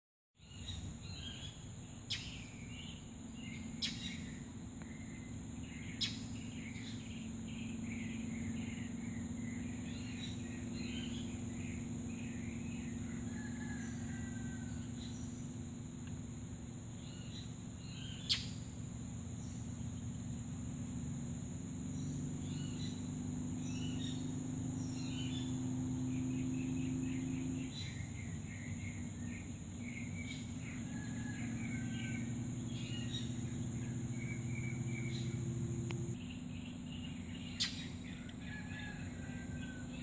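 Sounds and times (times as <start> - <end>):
birds chirping: 0.4 - 40.0
crickets trilling: 0.4 - 40.0
low steady hum: 0.4 - 40.0.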